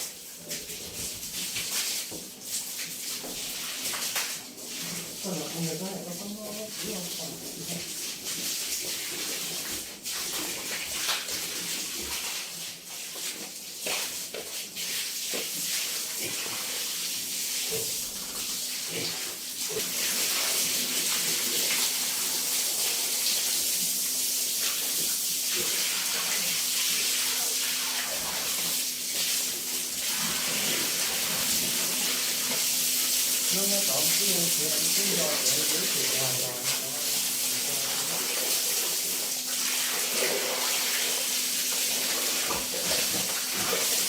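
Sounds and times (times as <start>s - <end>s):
water rushing hiss: 19.7s - 44.0s.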